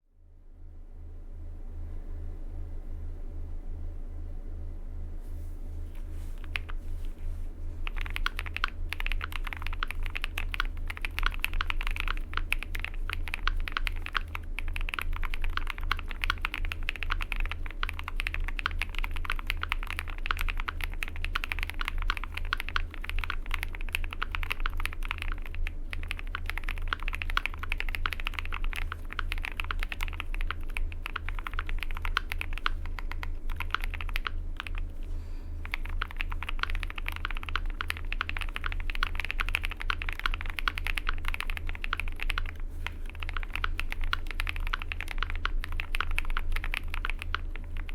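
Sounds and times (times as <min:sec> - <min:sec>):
fast typing on mechanical keyboard: 0:06.4 - 0:06.8, 0:07.8 - 0:47.9.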